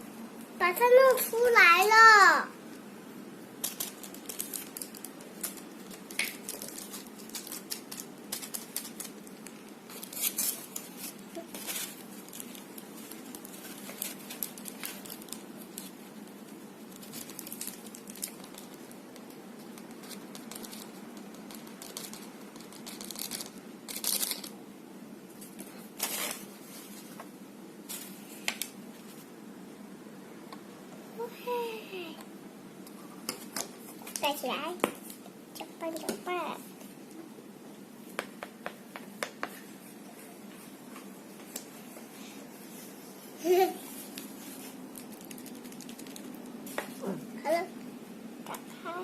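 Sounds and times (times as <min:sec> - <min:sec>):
packaging rustling: 0:03.6 - 0:16.2, 0:16.8 - 0:24.5, 0:43.5 - 0:46.7.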